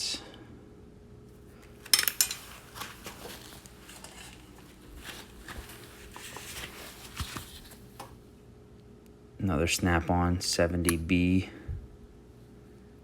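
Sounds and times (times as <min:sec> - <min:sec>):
metal hand tools clinking: 0:01.8 - 0:02.6.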